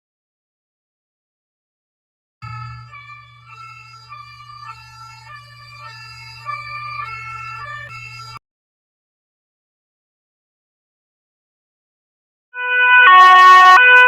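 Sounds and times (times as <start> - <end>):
electronic alarm tone: 2.4 - 8.4, 12.6 - 14.0
steady low hum: 2.4 - 8.4.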